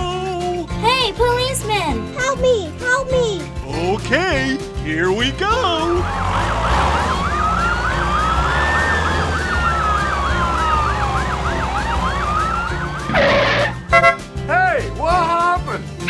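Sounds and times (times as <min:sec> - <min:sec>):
police siren wail: 0:05.9 - 0:13.8
police siren yelp: 0:06.0 - 0:13.8.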